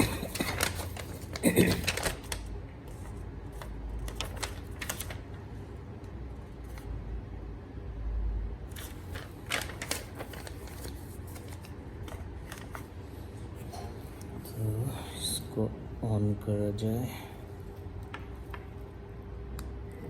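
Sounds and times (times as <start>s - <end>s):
packaging clicking and rustling: 0.0s - 5.3s, 8.7s - 12.9s.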